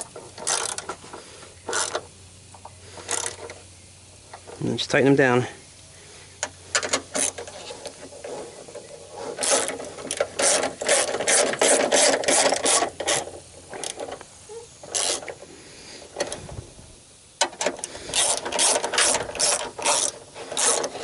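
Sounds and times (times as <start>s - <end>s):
ratchet wrench clicking: 0.0s - 1.0s, 1.7s - 2.0s, 3.0s - 3.6s, 9.4s - 14.2s, 14.9s - 15.4s, 17.4s - 21.0s.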